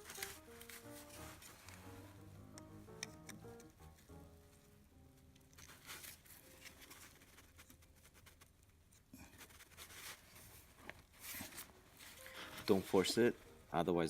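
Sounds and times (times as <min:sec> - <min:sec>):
plastic connector clicks: 0:02.6 - 0:03.8
faint scratching: 0:05.5 - 0:13.6.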